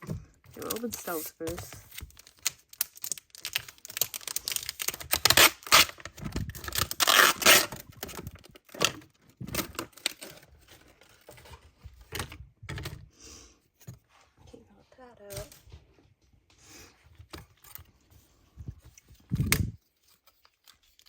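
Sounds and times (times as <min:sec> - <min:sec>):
packaging crinkling and tearing: 0:00.5 - 0:11.6, 0:19.0 - 0:21.0.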